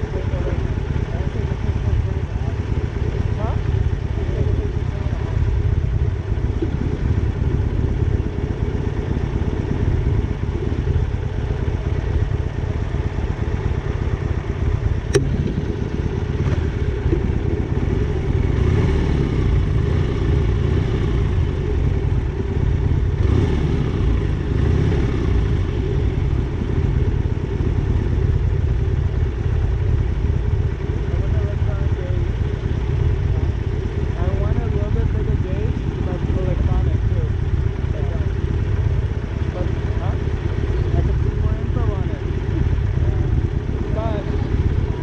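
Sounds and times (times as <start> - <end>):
motorcycle engine rumbling: 0.0 - 45.0
sharp click: 15.1 - 15.6.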